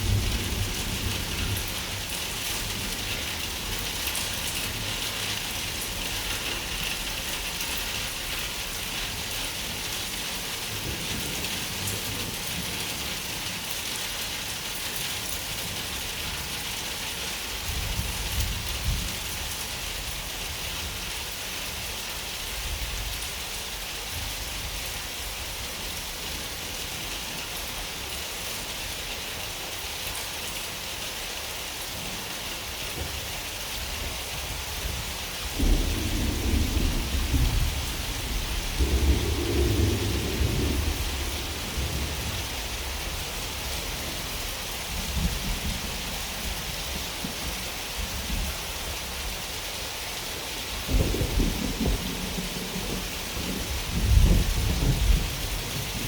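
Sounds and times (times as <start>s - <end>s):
steady rain falling: 0.0s - 56.0s
thunder rolling: 35.5s - 44.3s, 50.9s - 56.0s.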